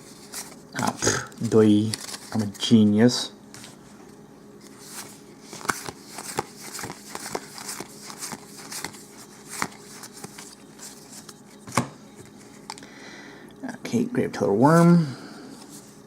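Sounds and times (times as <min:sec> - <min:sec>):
steady low hum: 0:00.0 - 0:16.0
foil wrapper and cards crinkling: 0:00.2 - 0:02.8, 0:04.8 - 0:11.4.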